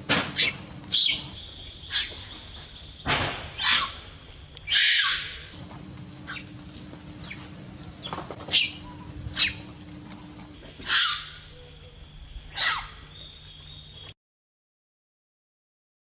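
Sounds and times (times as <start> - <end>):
baby monkey squealing: 0.1 - 2.1, 6.2 - 11.3, 12.5 - 13.0.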